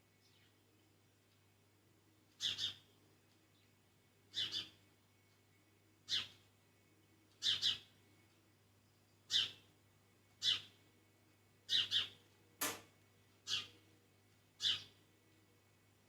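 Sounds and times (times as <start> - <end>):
bird chirping: 2.4 - 2.8, 3.5 - 4.8, 6.1 - 6.4, 7.4 - 7.9, 8.9 - 9.7, 10.4 - 10.8, 11.7 - 12.8, 13.4 - 13.8, 14.6 - 15.0.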